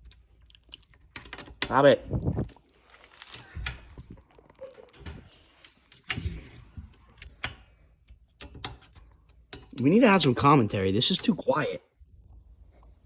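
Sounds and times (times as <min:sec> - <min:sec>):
tools and bike parts clicking: 0:00.8 - 0:01.9, 0:03.2 - 0:11.4.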